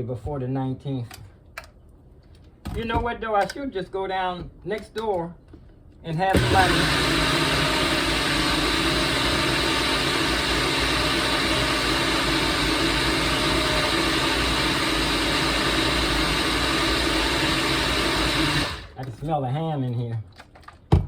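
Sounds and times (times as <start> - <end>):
blender running: 6.3 - 19.0.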